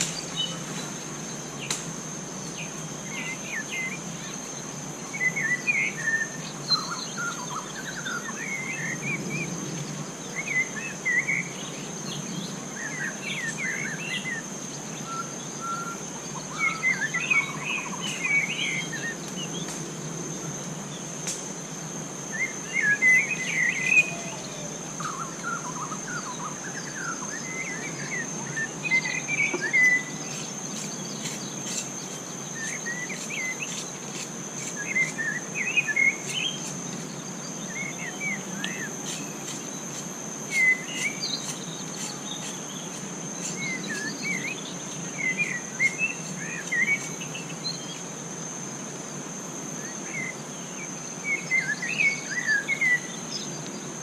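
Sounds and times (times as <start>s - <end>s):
high-pitched insect drone: 0.0s - 54.0s
birds chirping and calling: 10.3s - 19.7s, 22.4s - 48.0s.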